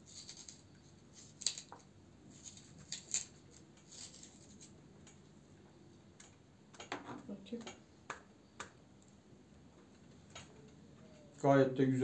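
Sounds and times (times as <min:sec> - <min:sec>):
knife scraping radish: 0:00.0 - 0:01.7.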